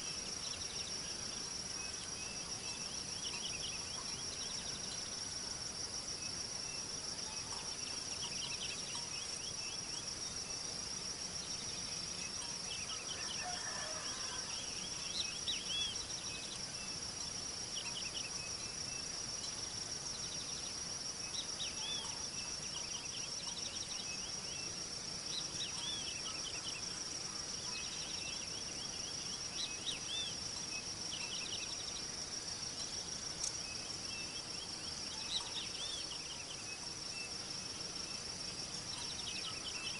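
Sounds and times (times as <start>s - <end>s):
insects trilling: 0.0s - 39.9s.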